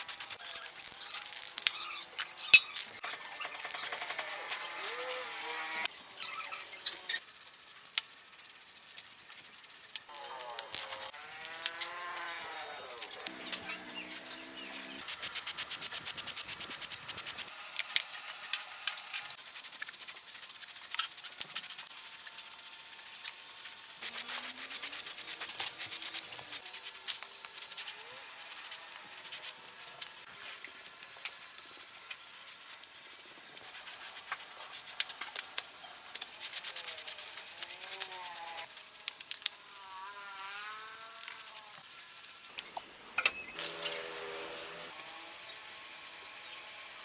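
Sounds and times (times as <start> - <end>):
small clicks and scrapes: 0.0 - 14.0, 15.0 - 47.0
abrasive rubbing on a part: 2.6 - 7.2, 24.0 - 26.7, 36.4 - 38.7, 43.7 - 47.0.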